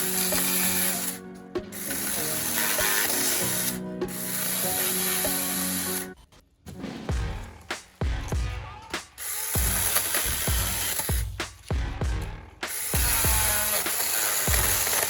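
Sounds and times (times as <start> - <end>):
mini chainsaw cutting wood: 0.0 - 6.2, 9.2 - 11.3, 12.7 - 15.0
background music: 0.0 - 15.0.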